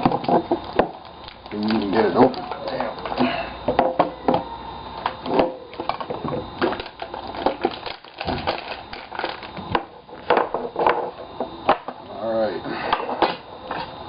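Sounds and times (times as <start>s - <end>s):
plastic packaging crinkling: 0.0s - 3.2s, 6.6s - 9.7s.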